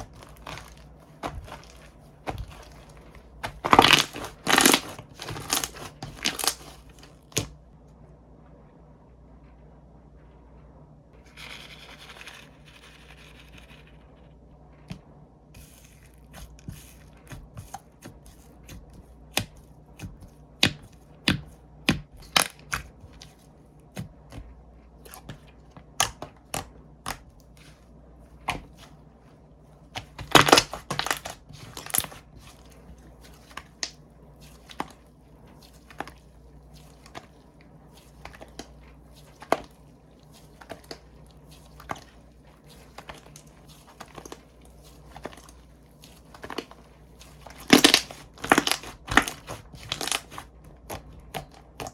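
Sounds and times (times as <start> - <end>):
slime clicking and popping: 3.4 - 6.8, 30.0 - 32.2, 47.5 - 51.9.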